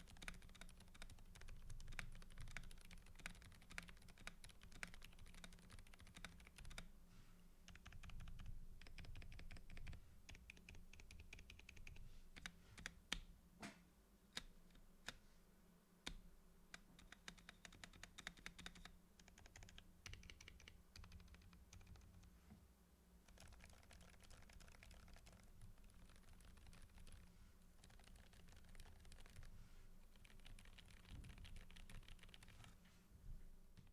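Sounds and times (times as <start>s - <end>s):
typing on mechanical keyboard: 0.0s - 6.9s, 7.7s - 13.0s, 16.8s - 22.3s, 23.3s - 29.5s, 30.1s - 32.8s.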